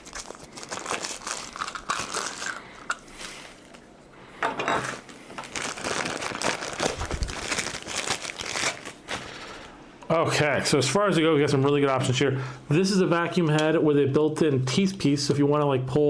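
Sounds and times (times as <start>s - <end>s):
plastic packaging crinkling: 0.0s - 3.9s, 4.8s - 9.8s.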